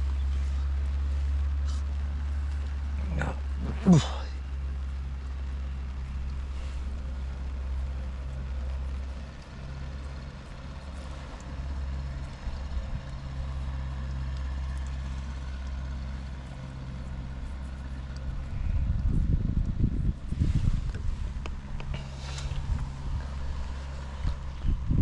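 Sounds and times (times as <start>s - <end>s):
low engine hum: 0.0s - 25.0s
wind buffeting microphone: 18.2s - 25.0s.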